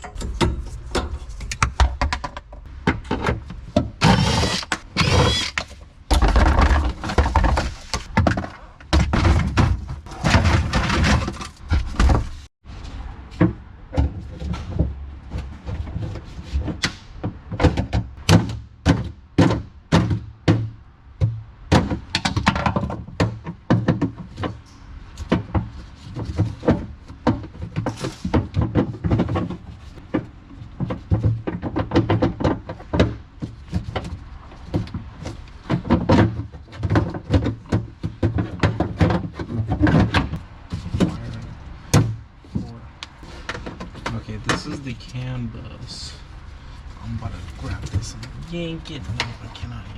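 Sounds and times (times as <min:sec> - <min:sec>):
car trim knocking and thunking: 0:13.4 - 0:24.6, 0:25.2 - 0:41.3, 0:41.9 - 0:42.7.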